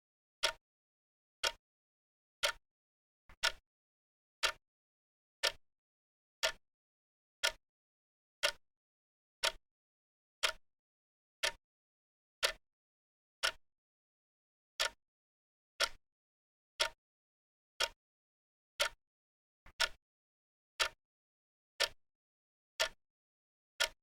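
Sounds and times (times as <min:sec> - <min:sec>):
clock ticking: 0:03.3 - 0:03.6, 0:15.8 - 0:16.0, 0:19.7 - 0:20.0.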